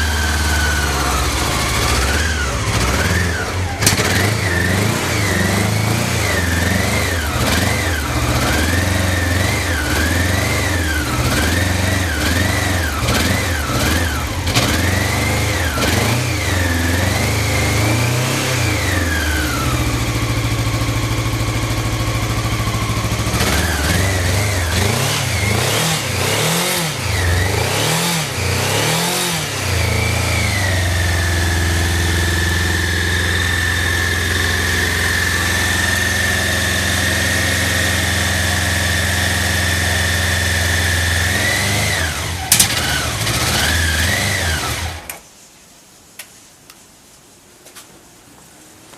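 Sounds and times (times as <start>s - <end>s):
engine revving: 0.0s - 45.2s.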